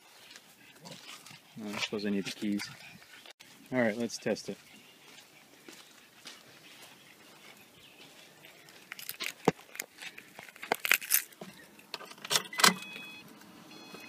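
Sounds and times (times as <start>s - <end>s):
car keys jangling: 10.4s - 11.4s
short electronic beeps: 12.7s - 14.0s.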